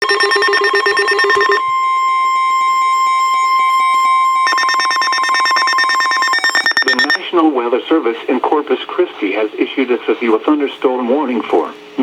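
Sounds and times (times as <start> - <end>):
steady alarm tone: 0.0 - 7.4.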